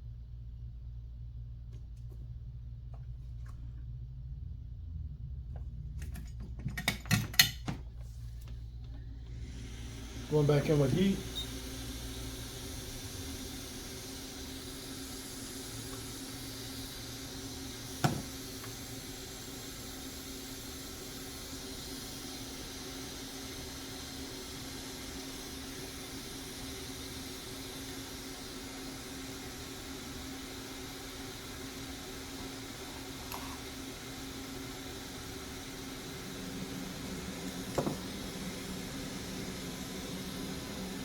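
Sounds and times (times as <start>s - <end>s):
low hum: 0.0s - 6.4s, 32.8s - 41.0s
hot air station blowing: 9.0s - 41.0s.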